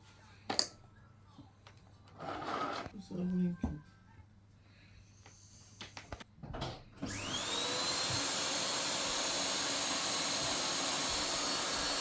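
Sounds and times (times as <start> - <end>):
vacuum cleaner motor whine: 7.0 - 12.0.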